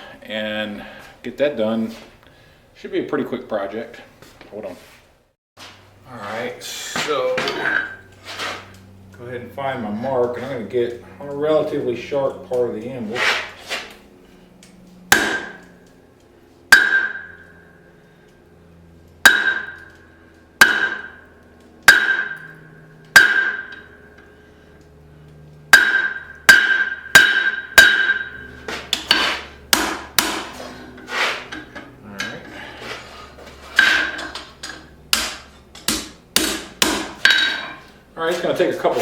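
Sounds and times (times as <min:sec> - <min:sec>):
hammer ringing on anvil: 0:15.1 - 0:15.6, 0:16.7 - 0:17.9, 0:19.2 - 0:20.0, 0:20.6 - 0:21.3, 0:21.9 - 0:24.2, 0:25.7 - 0:30.5, 0:33.8 - 0:37.8.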